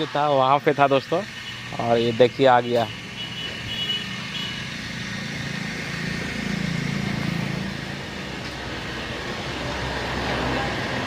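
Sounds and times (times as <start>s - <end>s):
street noise: 0.0s - 11.0s
vehicle engine running: 2.8s - 11.0s.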